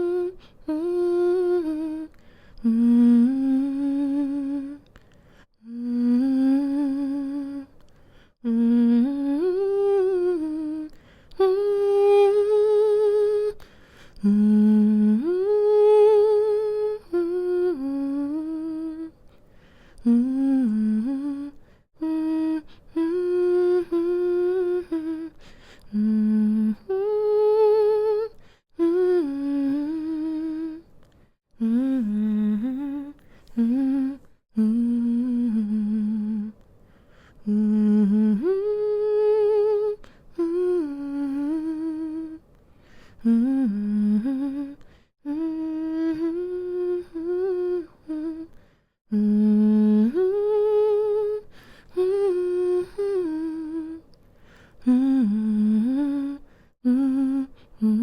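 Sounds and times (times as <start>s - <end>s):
woman humming a lullaby: 0.0s - 4.8s, 5.6s - 7.7s, 43.2s - 54.1s.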